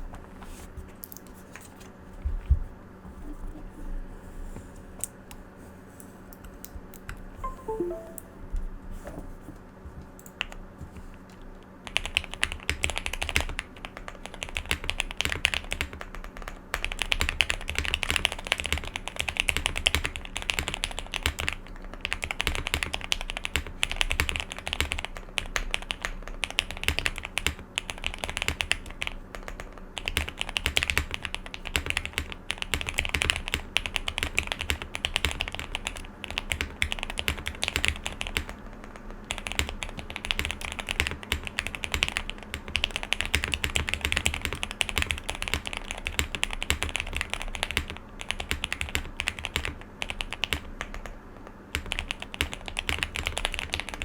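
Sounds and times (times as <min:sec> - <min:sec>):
mechanical keyboard typing: 0:11.8 - 0:54.0.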